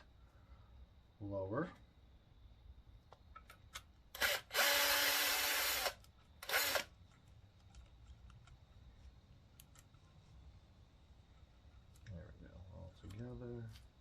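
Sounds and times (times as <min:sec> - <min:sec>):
cordless drill motor whine: 0:04.2 - 0:06.9.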